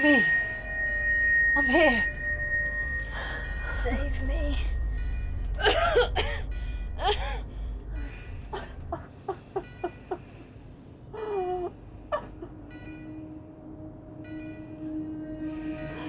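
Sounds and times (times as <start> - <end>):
low rumble: 0.0 - 11.2.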